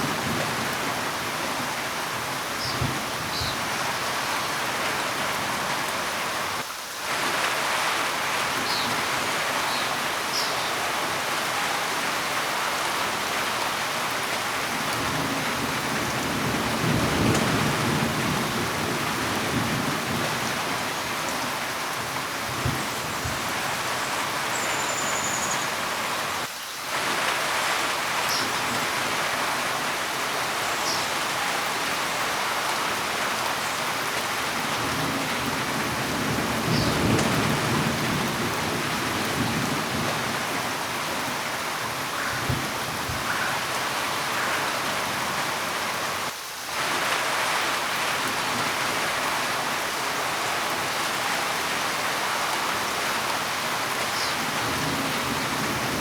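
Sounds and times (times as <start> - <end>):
heavy rain falling: 0.0 - 56.0
low rumble of thunder: 15.0 - 21.0, 34.7 - 40.8.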